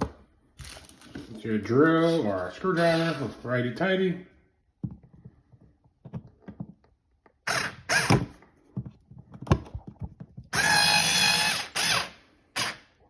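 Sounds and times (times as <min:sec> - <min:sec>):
power drill driving a screw: 0:02.8 - 0:03.3, 0:07.4 - 0:08.3, 0:10.5 - 0:12.9.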